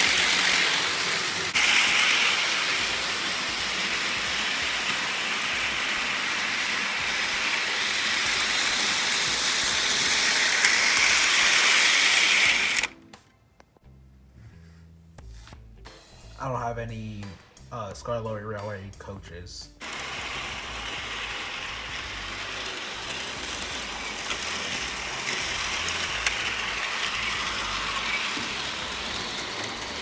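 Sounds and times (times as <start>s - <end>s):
model train rattling on track: 0.0s - 12.9s, 19.8s - 30.0s.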